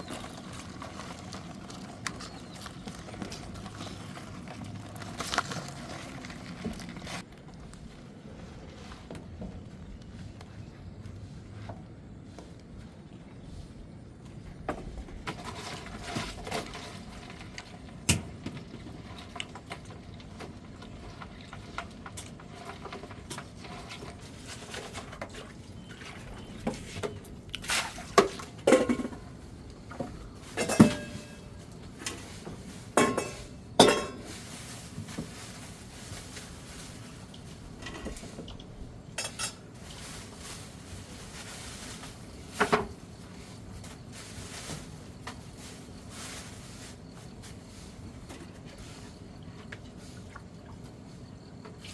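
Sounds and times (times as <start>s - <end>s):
pots and dishes clinking: 28.1s - 29.3s, 30.4s - 34.6s, 39.2s - 39.8s.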